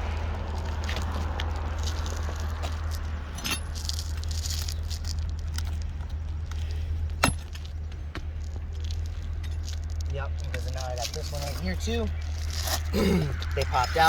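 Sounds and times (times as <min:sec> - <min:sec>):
steady low rumble: 0:00.0 - 0:14.0
roofing tools and nails clinking: 0:02.9 - 0:12.9.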